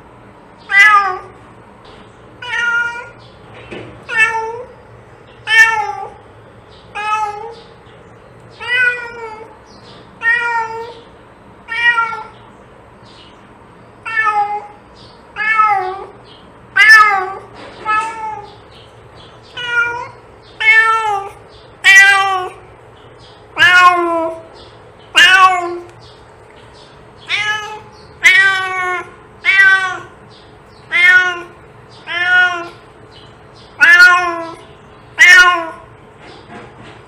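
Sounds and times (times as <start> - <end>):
cat meowing: 0.6 - 1.4, 2.4 - 3.2, 4.1 - 4.7, 5.4 - 6.2, 6.9 - 7.6, 8.6 - 9.6, 10.2 - 12.4, 14.0 - 16.2, 16.8 - 18.6, 19.5 - 22.6, 23.6 - 24.5, 25.1 - 25.9, 27.2 - 30.2, 30.8 - 32.8, 33.7 - 36.0.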